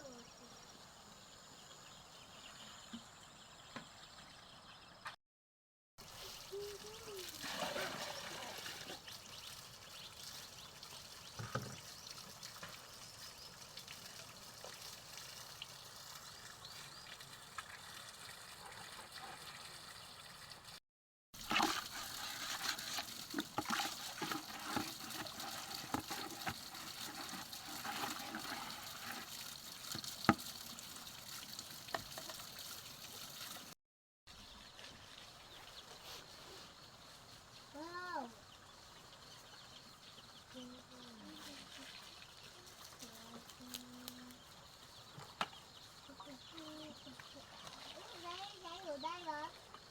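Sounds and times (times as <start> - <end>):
water trickling: 6.0 - 20.8, 21.4 - 33.8, 38.8 - 49.9.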